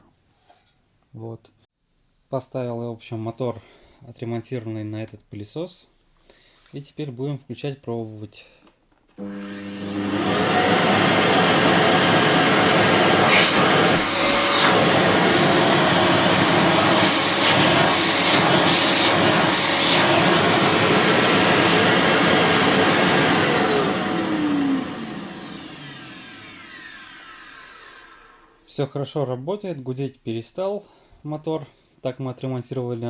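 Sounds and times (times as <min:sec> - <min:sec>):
vacuum cleaner running: 0:09.2 - 0:28.6
vacuum motor spinning down: 0:09.2 - 0:28.6.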